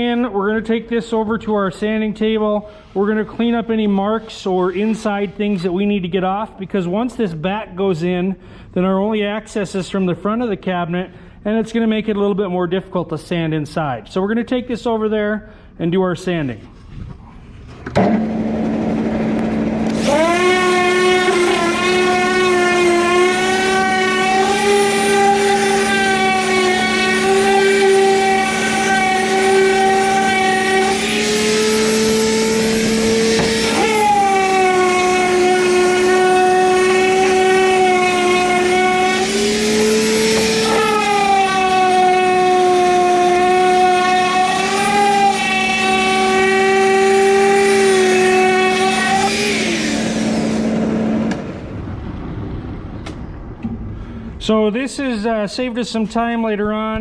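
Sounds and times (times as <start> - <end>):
sander hum: 17.7 - 54.5
motor whine: 17.9 - 54.0.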